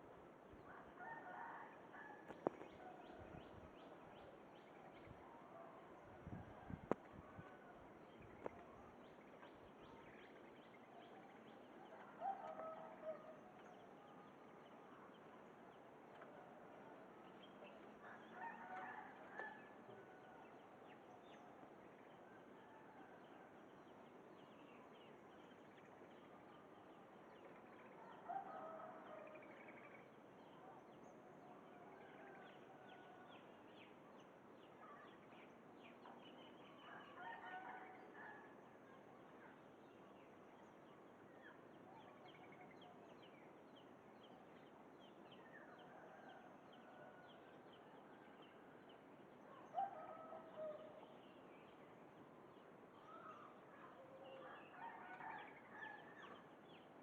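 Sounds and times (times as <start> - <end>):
distant rooster crowing: 0.7 - 2.6, 12.1 - 13.3, 18.1 - 20.1, 37.0 - 38.2.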